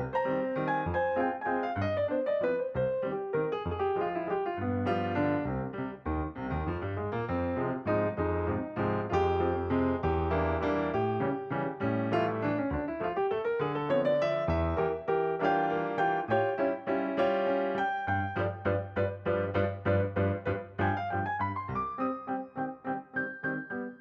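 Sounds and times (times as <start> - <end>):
piano music: 0.0 - 24.0.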